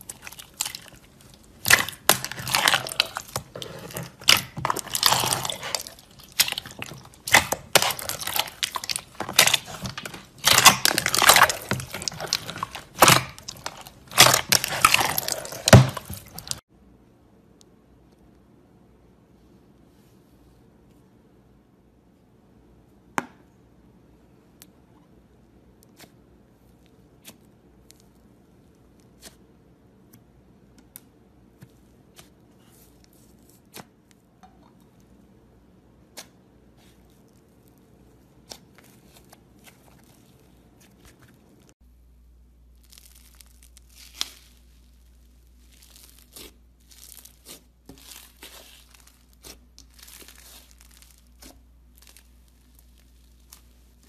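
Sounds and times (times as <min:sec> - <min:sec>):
slime crackling and tearing: 0:00.0 - 0:16.6, 0:42.6 - 0:54.0.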